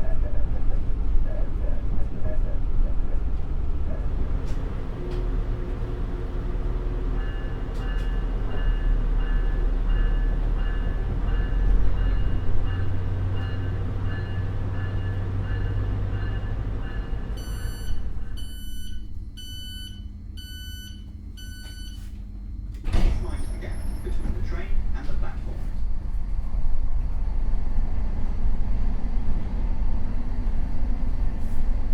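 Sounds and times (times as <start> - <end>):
train rumbling: 0.0 - 21.9, 22.8 - 31.9
electronic beeps: 17.4 - 22.0.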